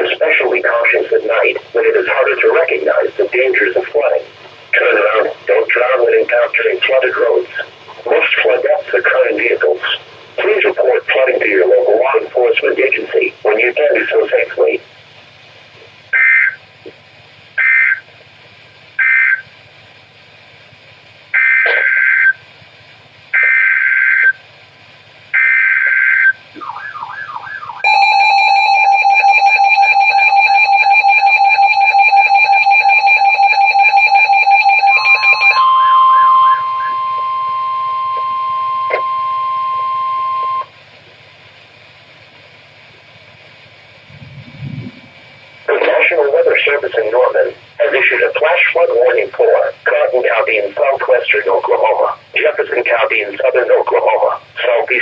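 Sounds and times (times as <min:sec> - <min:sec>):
data bursts: 0:25.4 - 0:40.7
steady alert tone: 0:25.4 - 0:40.7
two-tone attention signal: 0:25.4 - 0:40.8.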